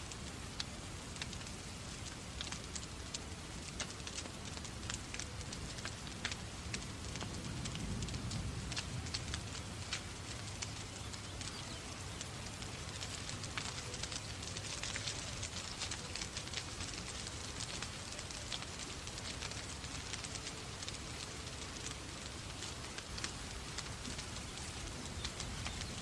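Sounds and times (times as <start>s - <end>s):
rain hissing: 0.0s - 26.0s
wood fire crackling: 0.0s - 26.0s.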